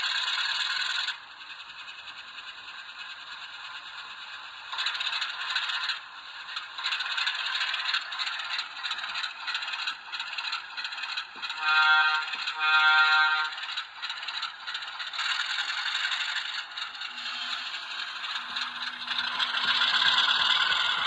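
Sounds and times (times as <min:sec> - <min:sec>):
model trains rattling: 0:00.0 - 0:21.0
wheels clicking over rail: 0:04.7 - 0:12.6, 0:13.4 - 0:21.0.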